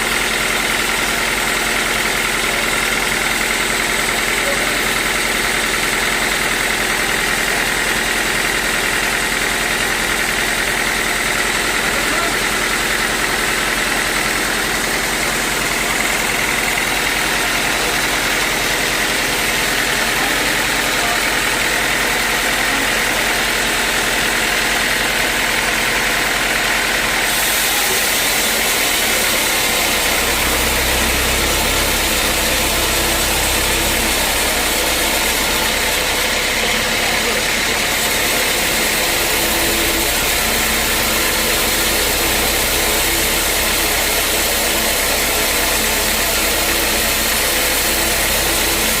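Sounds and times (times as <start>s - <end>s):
sawmill machinery drone: 0.0s - 49.0s
low hum: 28.0s - 49.0s.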